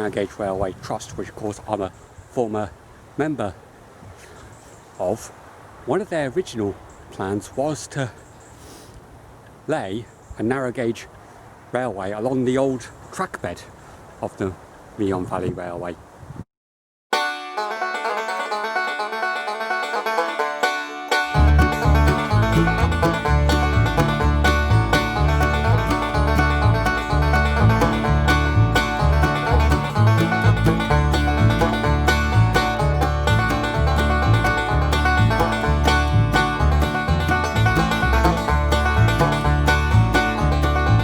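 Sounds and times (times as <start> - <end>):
banjo-led bluegrass tune: 17.1 - 41.0
low bass line: 21.3 - 41.0.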